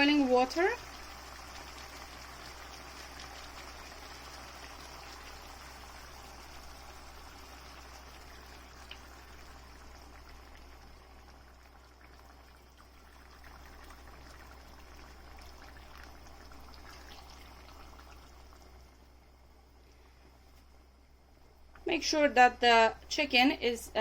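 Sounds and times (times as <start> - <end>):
water pouring into a pot: 0.0 - 19.2.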